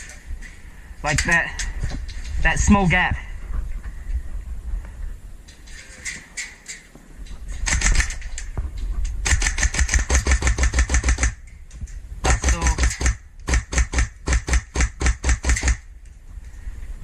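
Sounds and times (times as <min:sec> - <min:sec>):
airsoft gun firing full auto: 0:09.2 - 0:11.4.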